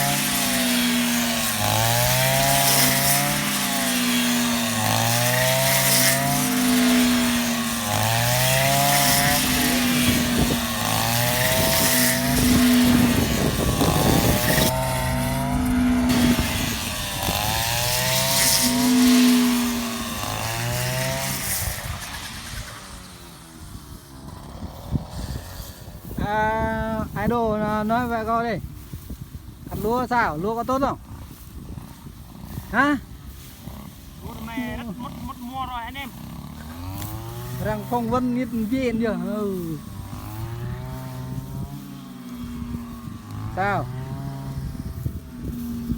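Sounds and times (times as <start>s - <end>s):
combine harvester running: 0.1s - 23.0s.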